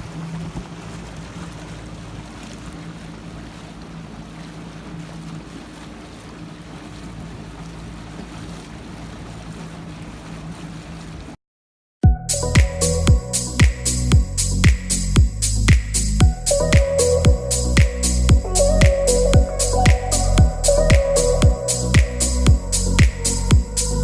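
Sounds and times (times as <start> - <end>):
boat engine drone: 0.0 - 11.4, 12.2 - 24.0
water noise: 0.0 - 11.4, 12.1 - 24.0
wind: 0.0 - 11.4, 12.2 - 24.0
electronic music with a beat: 12.0 - 24.0.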